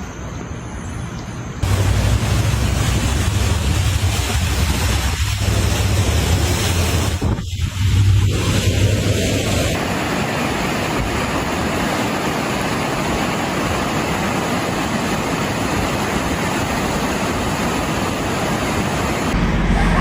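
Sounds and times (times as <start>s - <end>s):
low hum: 1.6s - 9.8s, 19.3s - 20.0s
floodwater rushing: 1.6s - 20.0s.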